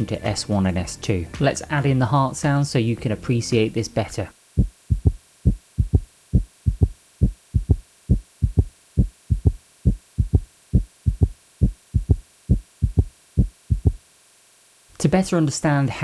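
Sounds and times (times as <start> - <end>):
heart sounds gallop rhythm: 4.6 - 14.0.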